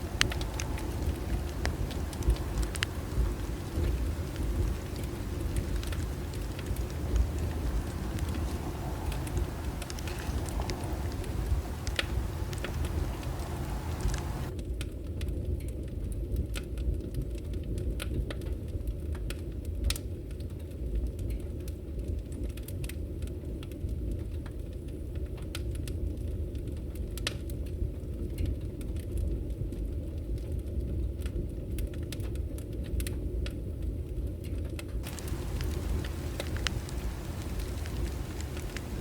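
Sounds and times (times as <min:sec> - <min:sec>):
bonfire rumbling: 0:00.0 - 0:14.5, 0:35.0 - 0:39.0
burning wood crackling and popping: 0:00.0 - 0:14.6, 0:35.0 - 0:39.0.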